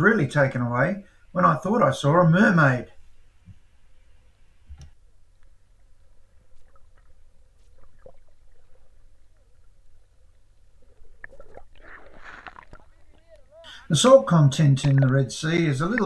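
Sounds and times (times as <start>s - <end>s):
faint underwater clicks: 3.1s - 16.0s
low underwater rumble: 5.1s - 16.0s
small water gurgles: 5.9s - 16.0s.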